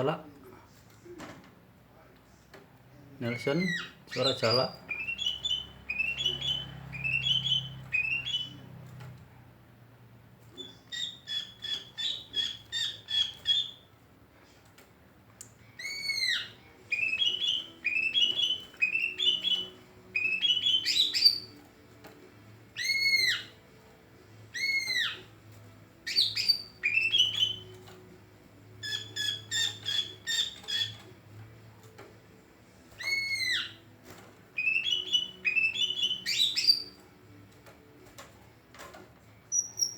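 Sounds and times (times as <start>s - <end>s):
bird chirping and whistling: 3.3s - 8.6s, 10.6s - 13.8s, 15.8s - 21.6s, 22.8s - 23.6s, 24.5s - 25.3s, 26.1s - 27.8s, 28.8s - 31.0s, 33.0s - 33.8s, 34.6s - 37.0s, 39.5s - 39.9s.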